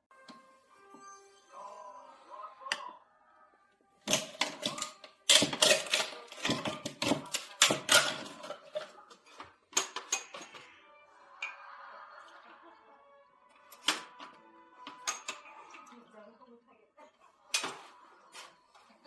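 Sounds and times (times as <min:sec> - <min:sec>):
clattering of clicks and knocks: 0:04.1 - 0:08.9.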